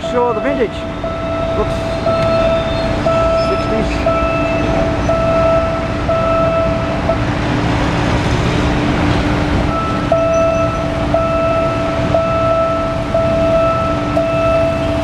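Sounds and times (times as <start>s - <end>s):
level-crossing warning alarm: 0.0s - 15.0s
rumble of rail and road traffic: 0.0s - 15.0s.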